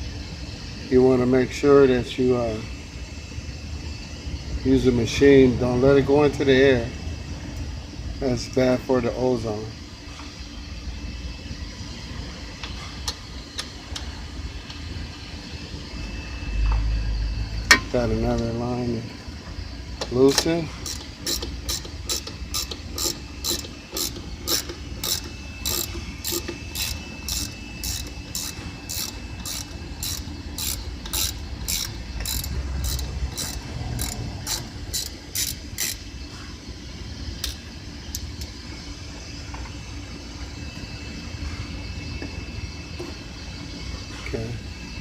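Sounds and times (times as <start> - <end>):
ratchet wrench clicking: 20.3 - 36.0, 37.4 - 38.5.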